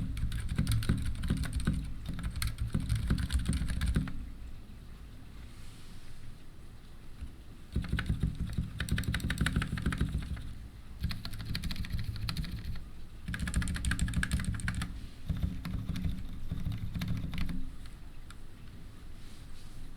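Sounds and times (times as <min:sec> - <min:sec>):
typing on mechanical keyboard: 0:00.0 - 0:04.2, 0:07.2 - 0:18.0.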